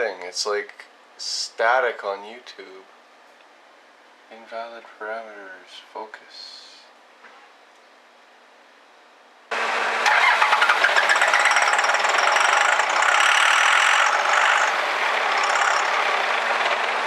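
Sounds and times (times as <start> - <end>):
diesel engine starting and running: 9.5 - 17.0
high engine whine: 9.5 - 17.0.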